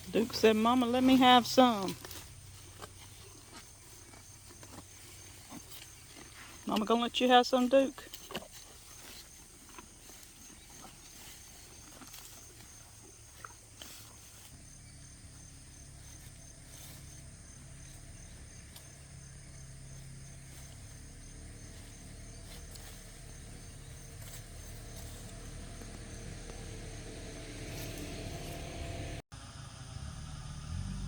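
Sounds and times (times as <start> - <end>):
faint crunches: 0.0 - 14.6
cows chewing stalks: 0.0 - 29.1
insects buzzing: 0.0 - 29.2
low hum: 14.6 - 31.0.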